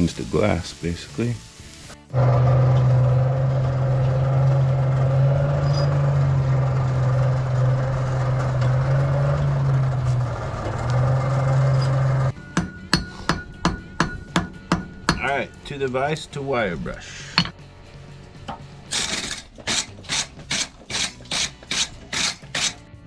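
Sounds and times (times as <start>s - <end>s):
forge blower humming: 2.1s - 12.3s
hammer blows on anvil: 12.3s - 16.4s.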